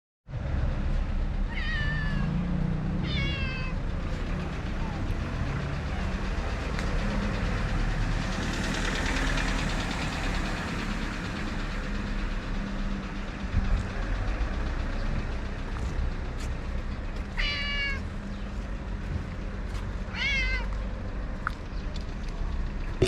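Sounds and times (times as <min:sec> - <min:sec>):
cat meowing: 0:01.4 - 0:03.9, 0:17.3 - 0:18.1, 0:20.1 - 0:20.8.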